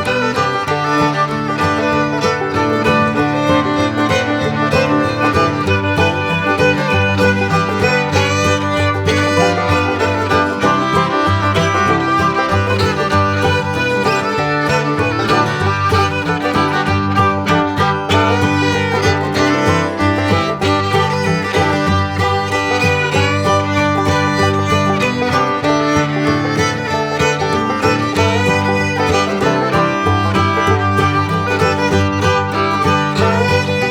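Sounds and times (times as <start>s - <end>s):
bluegrass instrumental music: 0.0s - 33.9s.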